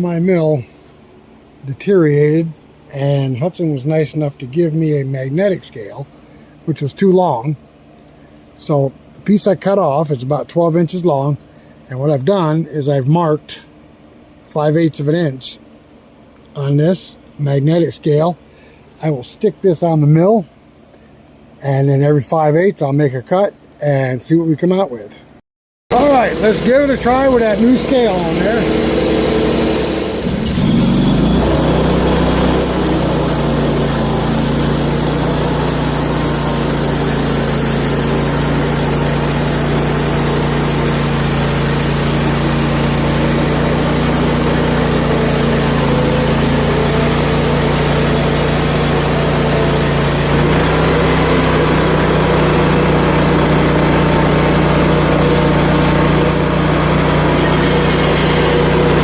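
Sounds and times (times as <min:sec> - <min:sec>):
saw cutting board: 0:25.9 - 0:59.0
sawmill gas engine running: 0:25.9 - 0:59.0.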